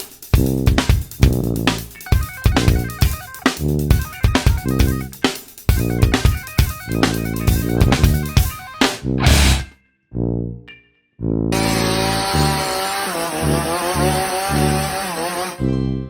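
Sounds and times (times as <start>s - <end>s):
music with drums and guitar: 0.0s - 9.7s.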